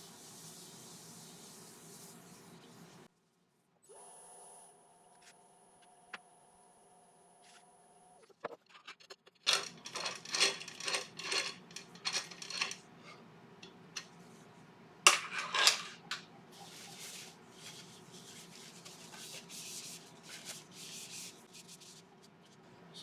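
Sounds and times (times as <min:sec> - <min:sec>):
soft rubbing: 0:00.0 - 0:03.1, 0:16.1 - 0:22.6
objects clinking and knocking: 0:09.4 - 0:12.9, 0:15.1 - 0:16.3.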